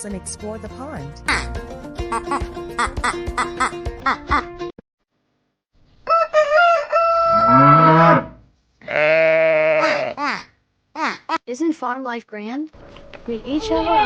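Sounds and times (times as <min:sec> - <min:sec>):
long farm animal call: 0:06.1 - 0:10.3
wavering bleat: 0:07.3 - 0:10.3.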